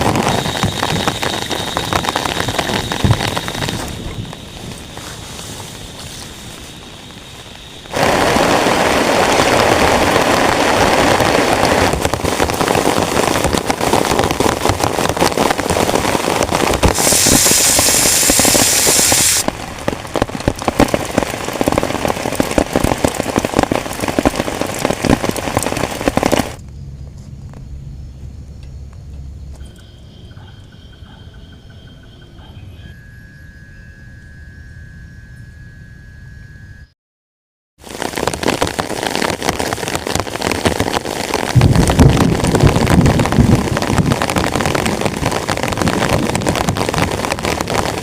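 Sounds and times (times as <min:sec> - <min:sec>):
heavy rain on a tent: 0:00.0 - 0:26.6, 0:37.8 - 0:48.0.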